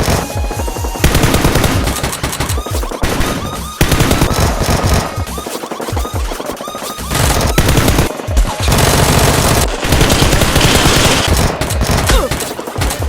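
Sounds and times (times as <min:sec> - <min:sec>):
background music: 0:00.0 - 0:13.0
automatic gunfire: 0:01.0 - 0:05.2, 0:07.1 - 0:12.5.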